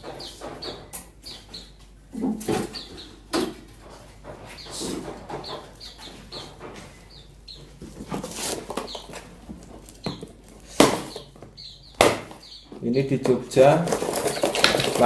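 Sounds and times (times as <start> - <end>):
high bird chirps: 0.0 - 1.8, 2.6 - 3.2, 4.5 - 7.7, 10.9 - 13.0.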